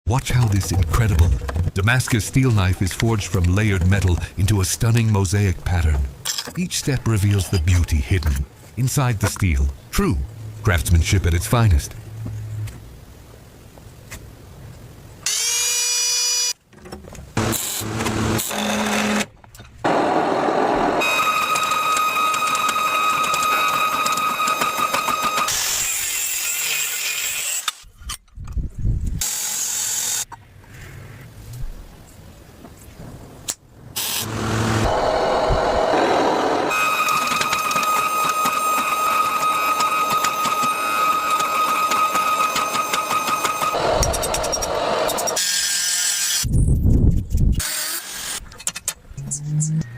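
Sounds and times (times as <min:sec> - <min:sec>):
motor whine: 0:34.2 - 0:45.4
machine grinding with high whine: 0:34.2 - 0:45.5.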